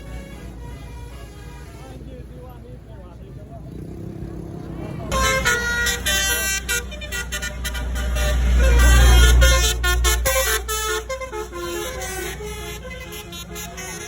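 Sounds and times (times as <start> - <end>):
bus horn playing a tune: 0.0 - 2.3, 5.1 - 14.0
bus engine rumble: 0.0 - 14.0.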